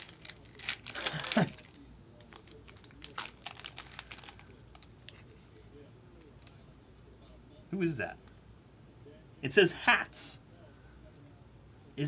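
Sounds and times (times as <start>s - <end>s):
wrapper crinkling and tearing: 0.0s - 5.2s.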